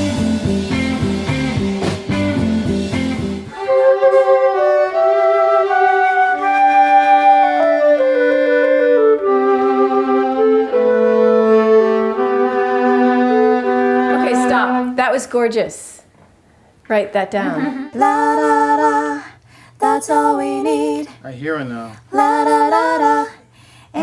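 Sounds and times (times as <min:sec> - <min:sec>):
band groove with bass and drums: 0:00.0 - 0:03.5
slow melody of held notes: 0:03.5 - 0:14.9.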